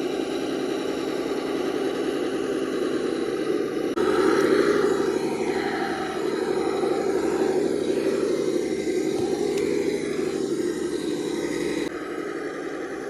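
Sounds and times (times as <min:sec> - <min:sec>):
rc car electric motor whine: 0:00.0 - 0:13.0.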